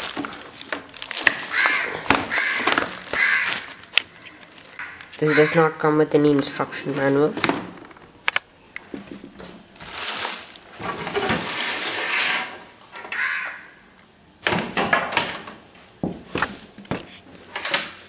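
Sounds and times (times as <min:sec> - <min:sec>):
packaging rustling and crinkling: 0:00.0 - 0:04.8, 0:09.0 - 0:12.4.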